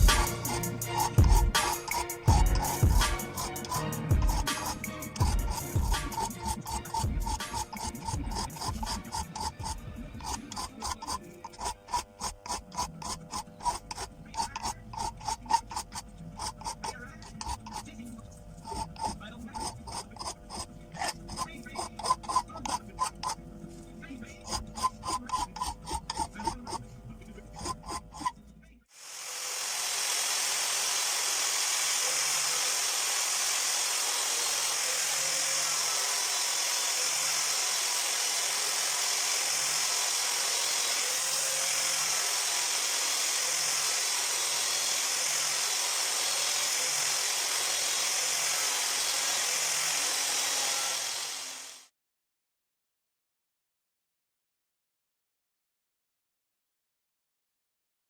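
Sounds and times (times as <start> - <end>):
power tool running with high hiss: 0.0 - 28.3, 28.9 - 51.9
short scraping strokes: 0.0 - 28.4.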